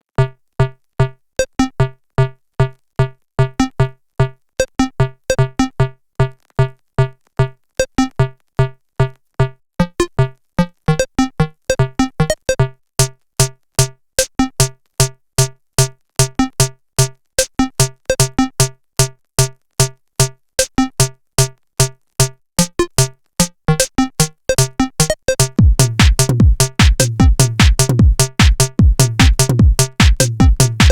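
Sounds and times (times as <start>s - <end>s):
heavy bass: 25.6s - 30.9s.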